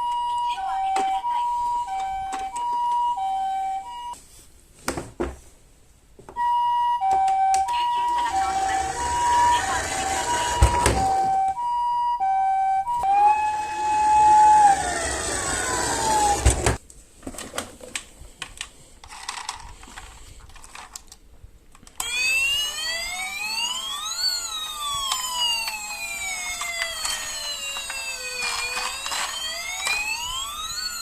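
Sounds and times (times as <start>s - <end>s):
toy siren: 0.0s - 4.2s, 6.4s - 16.6s, 22.0s - 31.0s.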